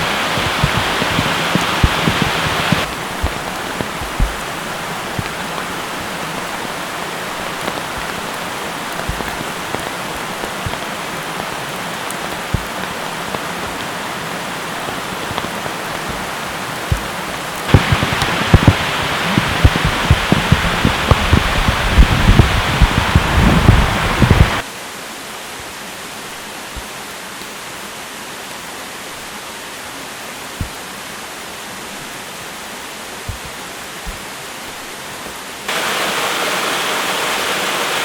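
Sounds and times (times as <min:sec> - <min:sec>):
low thumps: 0:00.0 - 0:24.6
waterfall rushing: 0:00.0 - 0:38.0.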